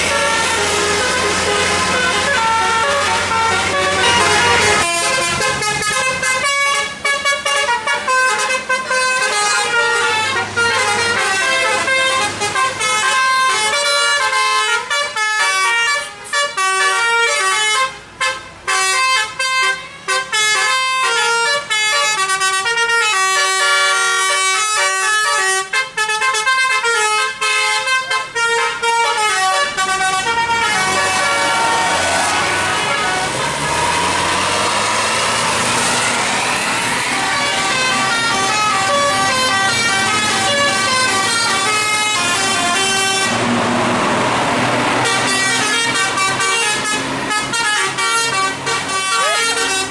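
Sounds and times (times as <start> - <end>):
musical air horn melody: 0.0 - 49.9.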